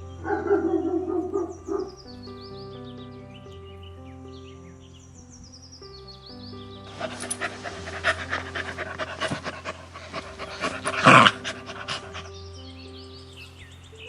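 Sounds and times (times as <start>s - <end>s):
background music: 0.0s - 14.0s
dog panting: 6.9s - 12.4s.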